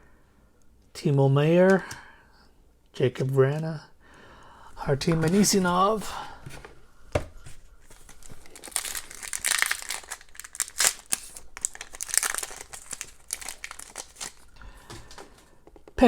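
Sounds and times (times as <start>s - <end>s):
foil wrapper crinkling and tearing: 7.9s - 14.5s.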